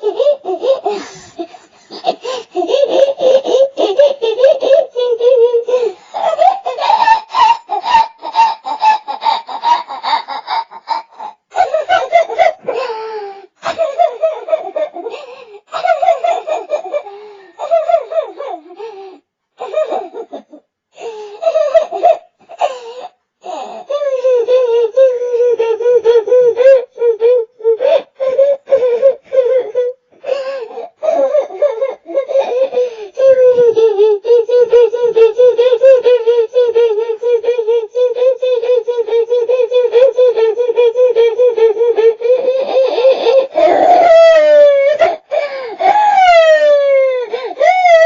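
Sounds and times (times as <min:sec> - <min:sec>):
child crying and sobbing: 0:00.0 - 0:20.6, 0:21.4 - 0:48.0.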